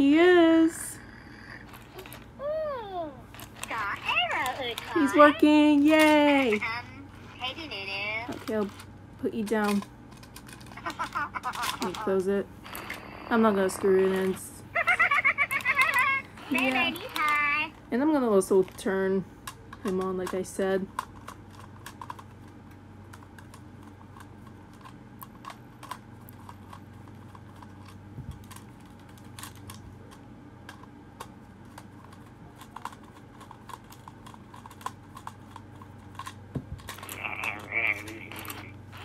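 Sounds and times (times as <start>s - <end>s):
toy electronic warbling voice: 37.1s - 39.0s.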